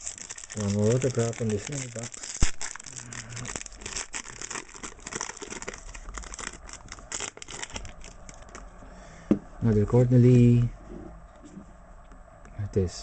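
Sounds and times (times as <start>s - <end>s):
wrapper crinkling: 0.0s - 8.7s.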